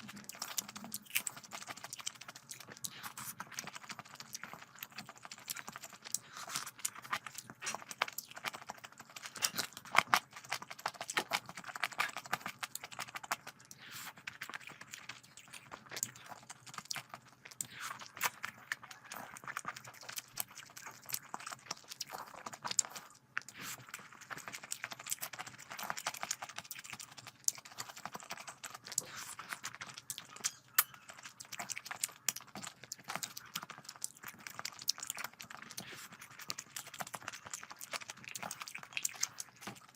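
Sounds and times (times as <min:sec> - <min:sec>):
wet chewing and lip-smacking: 0:00.0 - 0:39.9.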